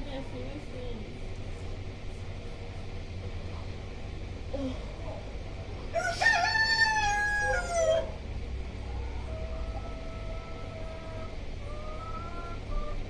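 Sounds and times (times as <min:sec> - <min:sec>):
rooster crowing: 0:05.9 - 0:08.3, 0:08.9 - 0:13.0
distant rooster crows: 0:05.9 - 0:13.0.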